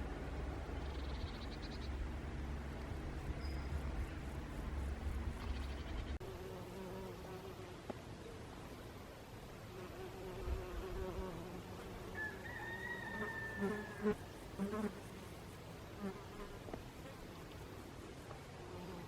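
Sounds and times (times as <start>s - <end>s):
insect buzzing: 9.7s - 16.6s, 18.6s - 19.0s.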